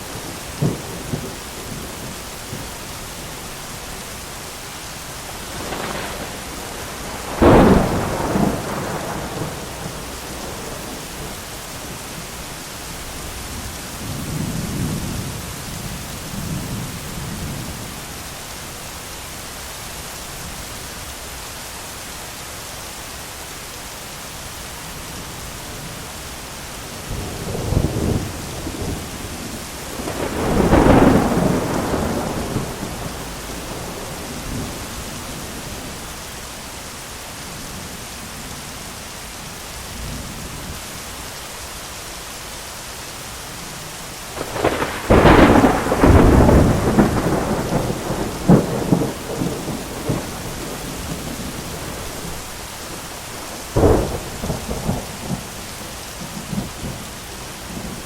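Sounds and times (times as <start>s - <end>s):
heavy rain: 0.0s - 58.0s
thunder rumbling and cracking: 5.3s - 12.3s, 27.1s - 36.0s, 44.4s - 55.6s.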